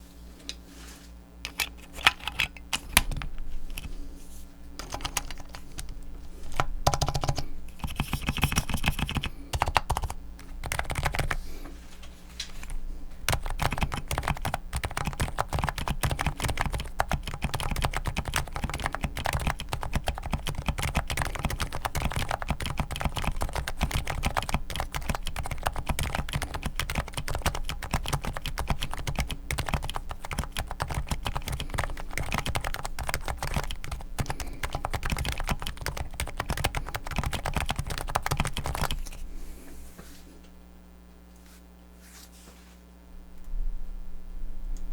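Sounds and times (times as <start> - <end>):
typing on keyboard: 1.5 - 4.0, 4.8 - 11.4, 12.5 - 39.2.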